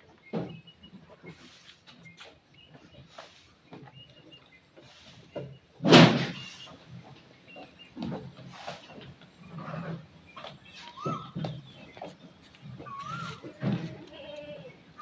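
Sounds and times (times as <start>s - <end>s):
livestock moving about: 0.0s - 15.0s
goats calling: 10.7s - 15.0s.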